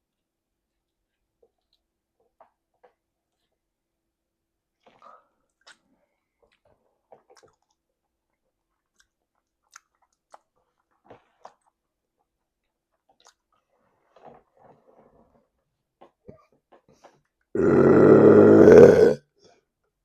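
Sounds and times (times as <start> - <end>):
person chewing food messily: 8.6 - 11.7.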